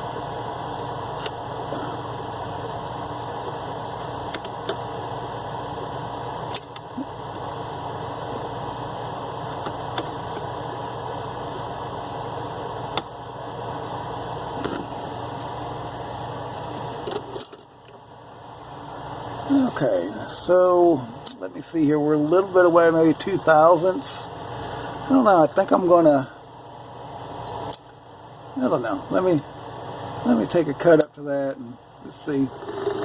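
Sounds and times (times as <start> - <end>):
mini lathe running: 32.3 - 33.0.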